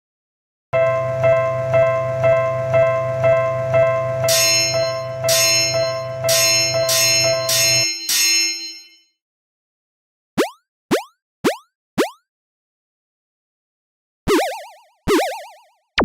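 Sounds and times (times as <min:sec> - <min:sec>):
low hum: 0:00.8 - 0:07.8
bright sharp bell striking: 0:00.8 - 0:09.0
level-crossing warning bell: 0:00.8 - 0:09.1.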